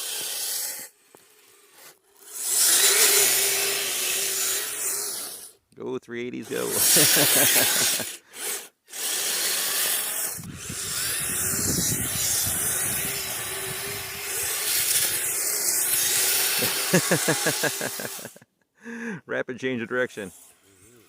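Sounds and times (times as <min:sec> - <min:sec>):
electric motor whine: 0:00.0 - 0:05.6, 0:06.4 - 0:18.4
churning hiss through snow: 0:06.6 - 0:08.1, 0:11.1 - 0:18.4.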